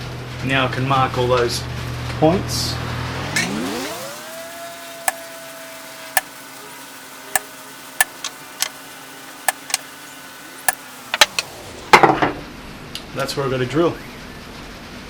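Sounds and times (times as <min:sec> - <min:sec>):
small power tool motor running: 0:03.4 - 0:12.0.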